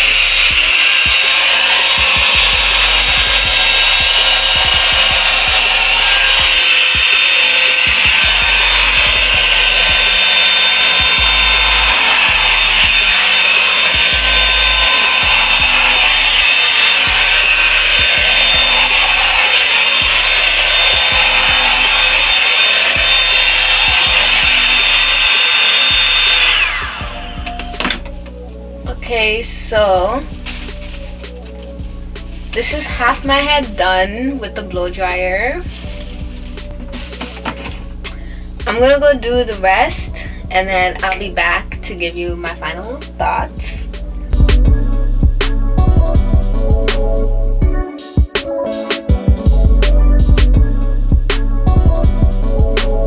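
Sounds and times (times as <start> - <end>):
blow dryer running: 0.0 - 47.1.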